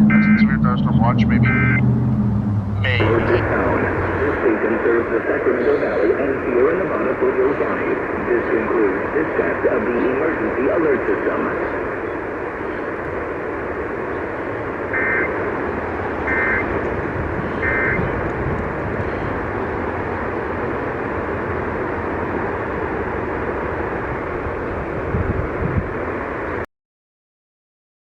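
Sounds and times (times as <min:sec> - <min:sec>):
radio hiss and static: 0:00.0 - 0:01.8, 0:02.8 - 0:21.1
two-tone data burst warbles: 0:00.0 - 0:01.9, 0:17.6 - 0:18.1.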